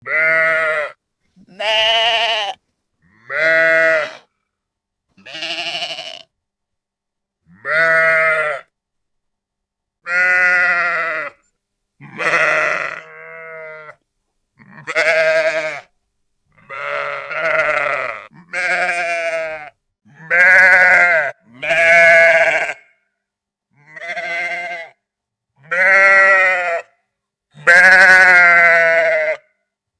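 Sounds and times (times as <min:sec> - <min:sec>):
sheep bleating: 0:00.0 - 0:04.3, 0:05.2 - 0:06.3, 0:07.5 - 0:08.7, 0:10.0 - 0:14.0, 0:14.6 - 0:15.9, 0:16.6 - 0:23.0, 0:23.8 - 0:25.0, 0:25.6 - 0:26.9, 0:27.6 - 0:29.5.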